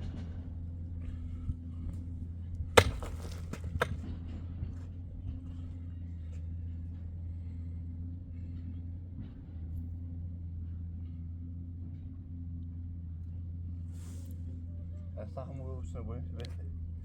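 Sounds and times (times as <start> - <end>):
low motor hum: 0.0 - 17.0
sharp knocks: 2.8 - 4.0.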